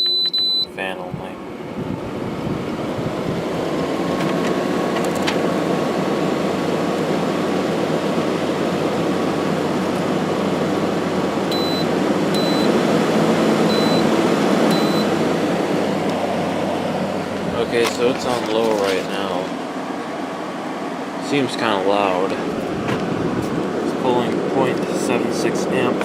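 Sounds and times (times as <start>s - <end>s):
control panel beeps: 0.0s - 0.8s, 11.5s - 12.7s, 13.7s - 14.1s, 14.7s - 15.1s
air conditioner fan rushing air: 0.1s - 26.0s.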